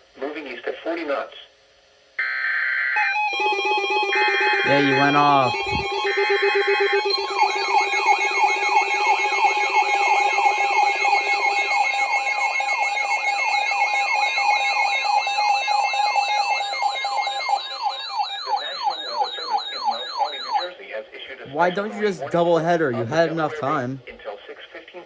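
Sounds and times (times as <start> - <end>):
siren-like falling whoop: 2.2 - 20.6
lower steady tone: 3.0 - 20.6
steady alert tone: 3.0 - 20.6.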